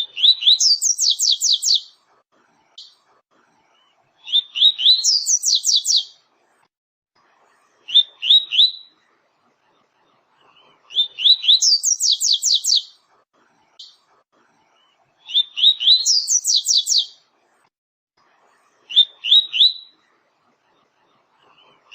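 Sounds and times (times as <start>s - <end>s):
bird singing: 0.0s - 1.9s, 4.2s - 6.1s, 10.9s - 13.0s, 14.8s - 17.2s, 18.9s - 20.0s.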